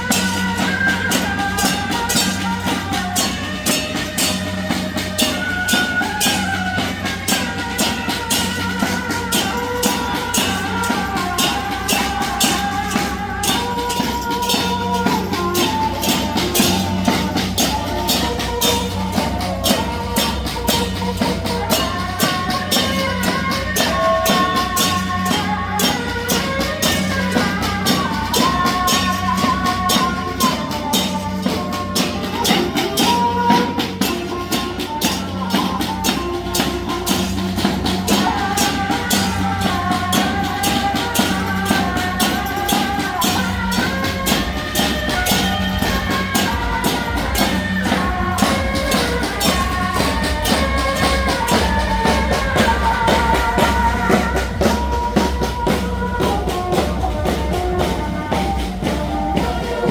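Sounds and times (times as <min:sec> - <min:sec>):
music with fast percussion: 0:00.0 - 0:59.9.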